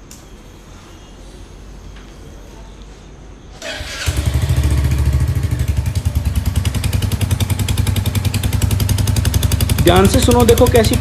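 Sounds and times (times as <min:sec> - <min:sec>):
motorcycle engine starting and idling: 0:03.6 - 0:11.0.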